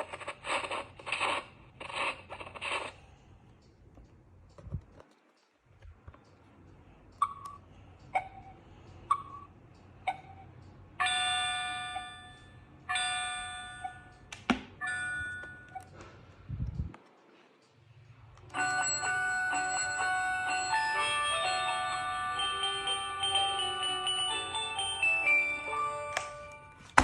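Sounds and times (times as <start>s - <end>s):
tinkling bell-like melody: 18.5s - 26.9s.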